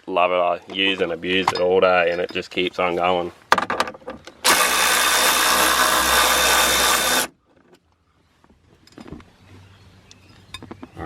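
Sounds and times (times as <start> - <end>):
cordless power tool running: 4.4 - 7.3.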